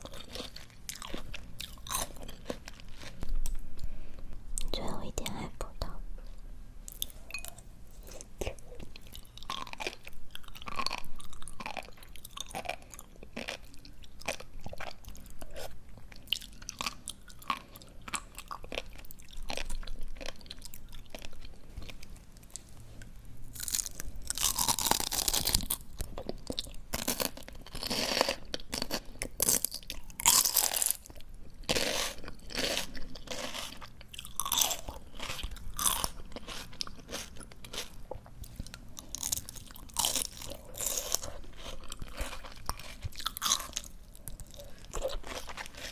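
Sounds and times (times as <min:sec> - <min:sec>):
chewing crisp raw greens: 0:00.0 - 0:03.9, 0:06.9 - 0:22.7, 0:23.5 - 0:45.9.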